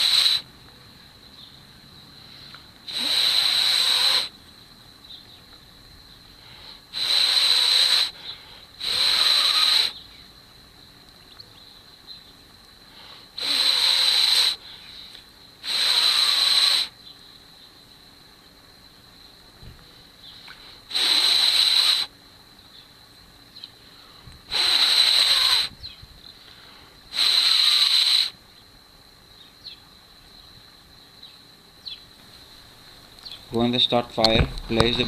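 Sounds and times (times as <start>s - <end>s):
person blowing on ember: 0.0s - 0.4s, 2.2s - 4.3s, 6.4s - 10.0s, 12.9s - 17.0s, 20.4s - 22.1s, 24.0s - 25.8s, 26.5s - 28.4s.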